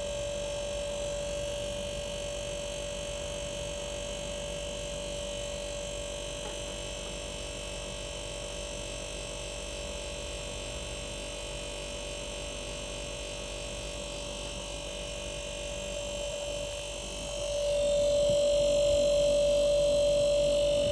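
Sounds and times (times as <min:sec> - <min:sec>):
refrigerator compressor humming: 0:00.0 - 0:20.9.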